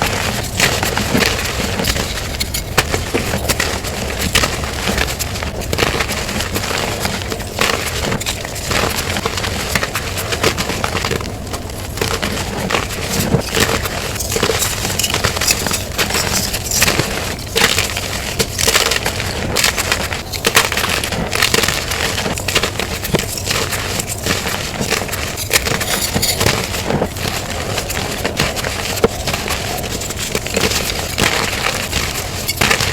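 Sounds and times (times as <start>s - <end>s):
chalk being crushed: 21.7s - 32.9s.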